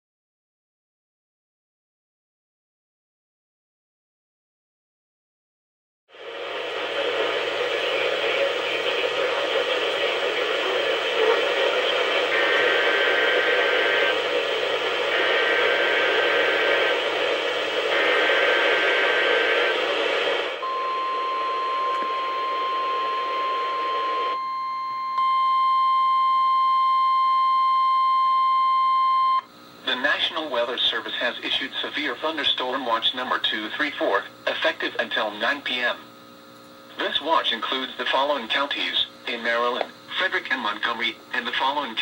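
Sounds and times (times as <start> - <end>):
radio static hiss: 6.1 - 24.4, 29.6 - 42.0.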